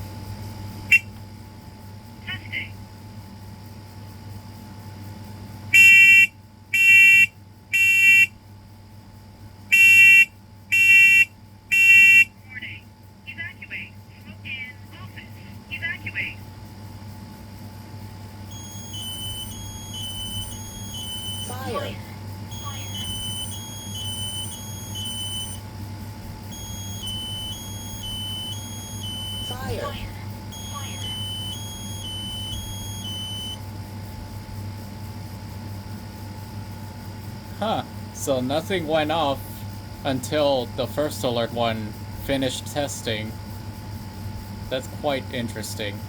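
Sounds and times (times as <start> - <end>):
smoke alarm shrill beeps: 0.9 - 1.1, 5.8 - 8.3, 9.7 - 12.3, 18.5 - 25.6, 26.5 - 33.6
low steady hum: 5.7 - 35.8.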